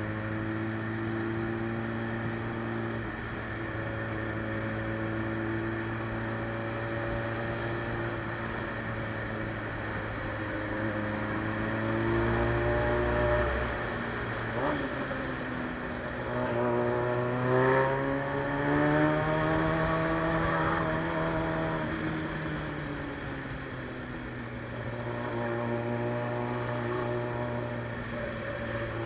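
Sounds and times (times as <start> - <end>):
motorcycle engine revving: 0.0 - 22.7.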